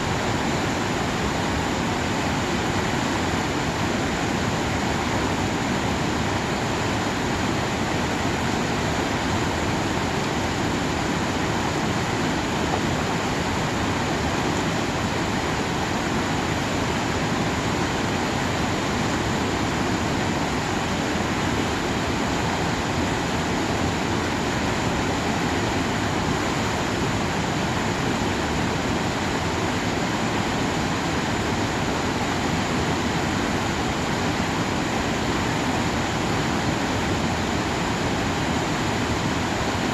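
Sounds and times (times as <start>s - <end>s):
mountain stream rushing: 0.0s - 39.9s.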